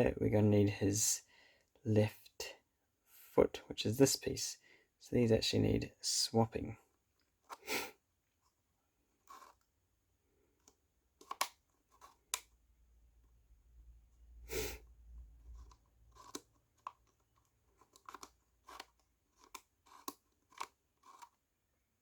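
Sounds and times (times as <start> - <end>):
wooden tiles clicking and scraping: 9.2 - 9.6, 10.5 - 12.4, 15.2 - 21.4.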